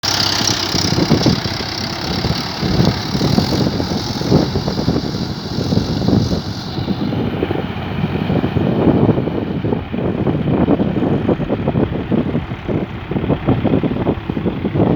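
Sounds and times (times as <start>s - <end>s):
tractor diesel engine throbbing: 0.0s - 14.9s.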